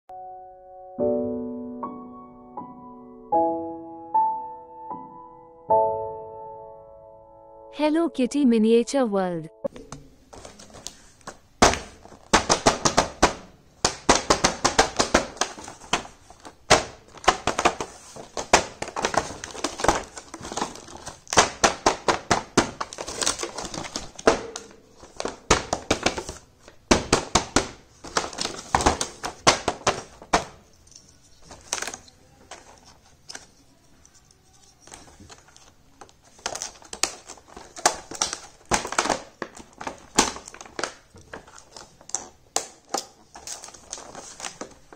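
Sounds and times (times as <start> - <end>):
packaging crinkling: 10.3 - 44.9
plastic pieces clicking and tapping: 10.4 - 44.9.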